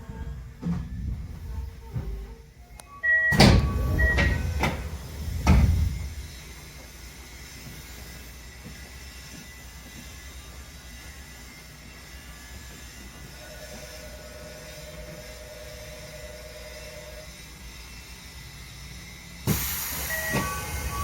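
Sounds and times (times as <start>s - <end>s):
train doors shutting with thuds: 0.0s - 9.4s, 19.4s - 21.0s
low hum of standing train: 0.0s - 21.0s
electronic door chime: 2.8s - 4.6s, 20.1s - 21.0s.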